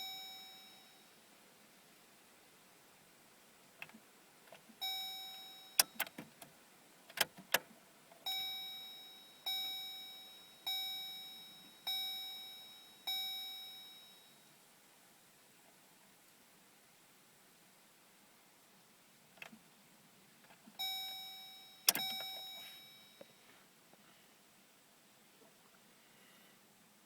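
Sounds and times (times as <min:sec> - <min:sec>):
dashboard warning chime: 0:00.0 - 0:01.1, 0:04.8 - 0:06.1, 0:08.2 - 0:14.5, 0:20.8 - 0:23.4.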